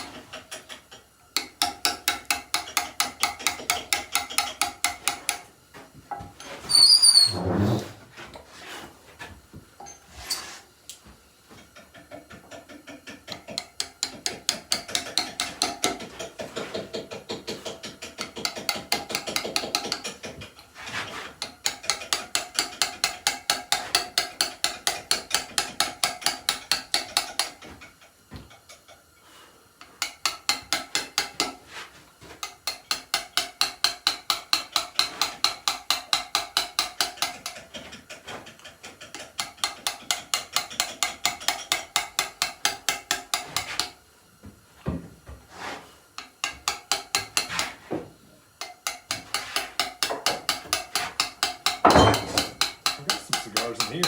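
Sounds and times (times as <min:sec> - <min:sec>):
loud high squeak: 0:06.6 - 0:07.9
mallet striking steel chisel on stone: 0:46.2 - 0:47.8, 0:48.6 - 0:54.0.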